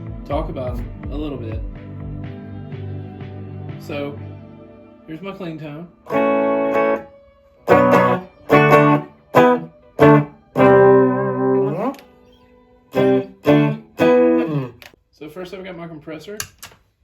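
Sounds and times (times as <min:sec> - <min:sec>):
clean electric guitar chords: 0:06.0 - 0:12.2, 0:12.9 - 0:14.8.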